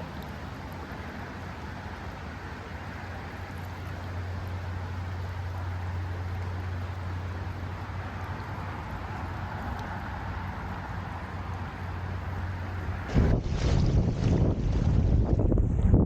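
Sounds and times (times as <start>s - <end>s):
river water rushing: 0.0s - 15.0s
wind rumbling on microphone: 6.8s - 16.0s.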